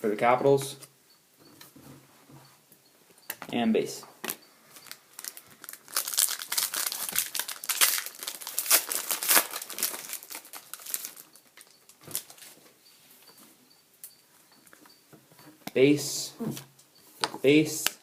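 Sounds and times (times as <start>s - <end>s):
wrapper crinkling and tearing: 4.8s - 12.6s.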